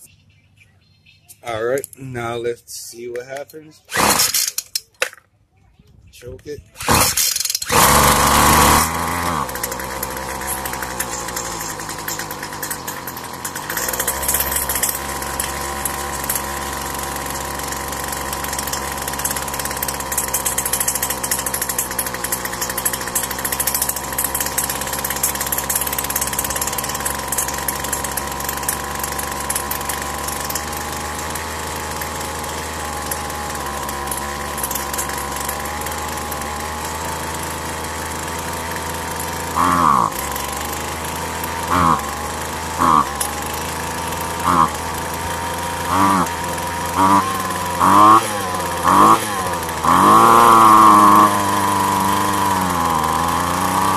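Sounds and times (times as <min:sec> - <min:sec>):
string trimmer engine running: 0:03.9 - 0:04.7, 0:06.7 - 0:53.9.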